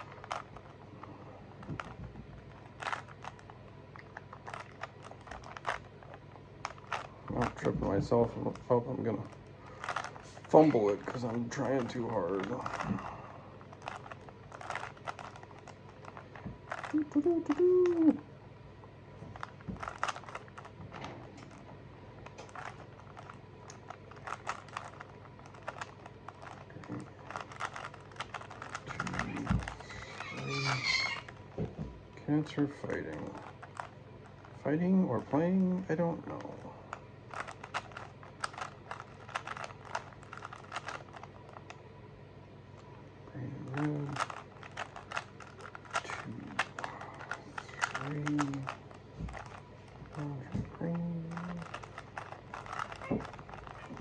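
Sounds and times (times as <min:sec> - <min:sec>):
low hum: 0:00.0 - 0:54.0
plastic puzzle cube clicking: 0:02.7 - 0:03.5, 0:04.1 - 0:07.7, 0:09.2 - 0:12.9, 0:13.8 - 0:18.1, 0:19.4 - 0:20.7, 0:22.2 - 0:31.3, 0:37.3 - 0:41.3, 0:43.8 - 0:50.2, 0:51.3 - 0:54.0.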